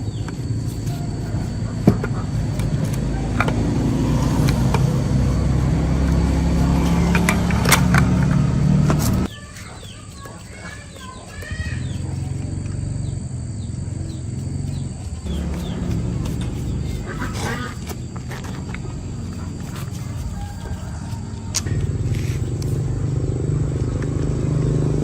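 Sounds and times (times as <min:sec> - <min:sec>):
machine motor humming: 0:00.0 - 0:09.3, 0:10.1 - 0:25.0
birds chirping: 0:00.0 - 0:25.0.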